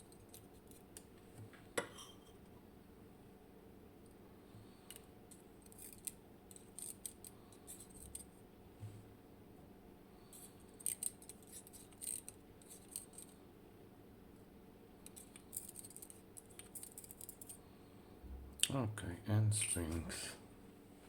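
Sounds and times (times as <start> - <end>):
small metal parts clicking: 4.9 - 8.3, 10.8 - 13.3, 15.0 - 17.6.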